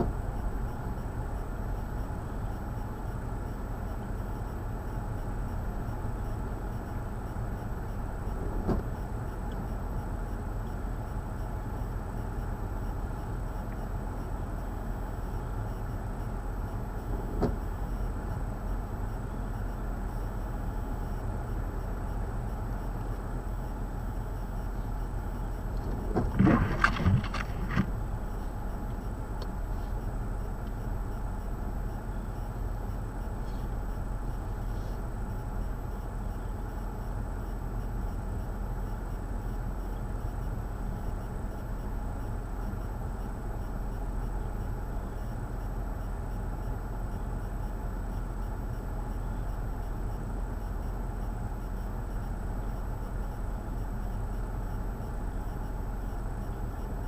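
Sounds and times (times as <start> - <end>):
wind: 0.0 - 57.0
distant traffic: 5.0 - 36.8.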